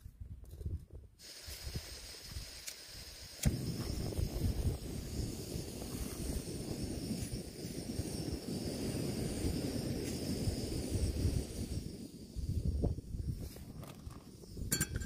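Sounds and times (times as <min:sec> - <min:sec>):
gas stove burner roaring: 0:01.2 - 0:12.9.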